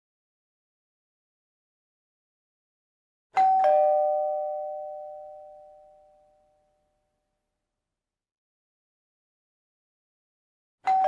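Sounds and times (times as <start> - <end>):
two-note doorbell chime: 3.4 - 6.9.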